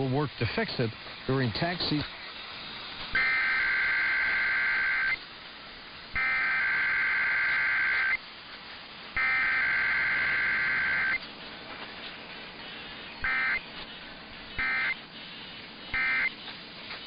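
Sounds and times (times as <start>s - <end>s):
digital tone bursts: 3.1s - 5.2s, 6.1s - 8.2s, 9.2s - 11.2s, 13.2s - 13.6s, 14.6s - 15.0s, 15.9s - 16.4s.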